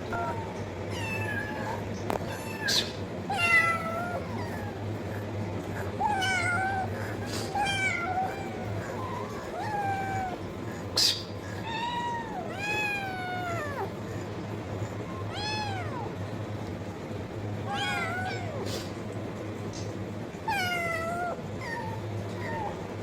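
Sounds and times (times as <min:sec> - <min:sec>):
cat meowing: 0:00.0 - 0:04.8, 0:06.0 - 0:10.4, 0:11.0 - 0:14.0, 0:15.0 - 0:16.2, 0:17.7 - 0:18.7, 0:20.4 - 0:22.8.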